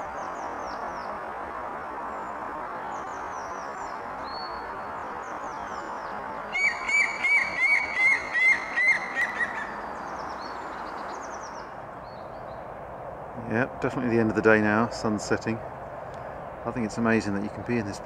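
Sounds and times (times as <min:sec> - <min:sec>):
distant road traffic hum: 0:00.0 - 0:18.0
small birds chirping: 0:02.0 - 0:12.7
bird piping notes: 0:02.9 - 0:12.3.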